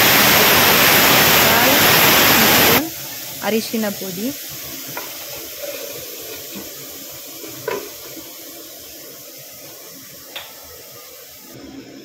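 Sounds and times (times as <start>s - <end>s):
liquid simmering in a pan: 2.8s - 12.0s.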